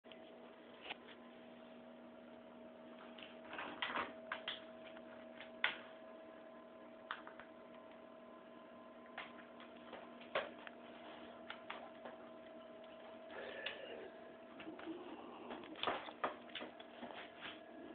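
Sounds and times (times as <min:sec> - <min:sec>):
steady low hum: 0:00.1 - 0:17.9
pet wheezing breathing: 0:13.3 - 0:15.8.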